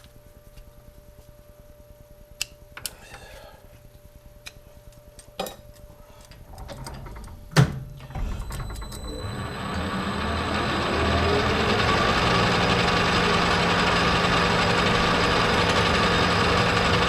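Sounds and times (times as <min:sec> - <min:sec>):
lathe running noise: 0:08.1 - 0:17.0.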